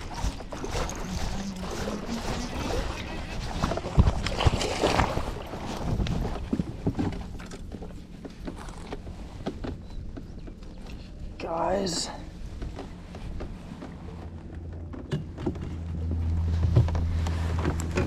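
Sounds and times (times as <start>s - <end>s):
water splashing: 0.0s - 7.4s.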